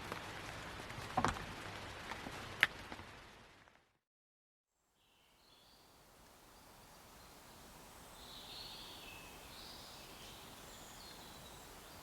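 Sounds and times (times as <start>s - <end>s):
rain hiss: 0.0s - 3.8s, 5.3s - 12.0s
faint outdoor ambience: 4.7s - 12.0s.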